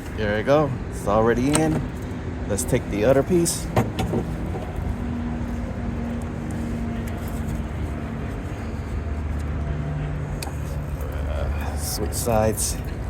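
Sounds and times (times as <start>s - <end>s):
low vehicle rumble: 0.0s - 13.0s.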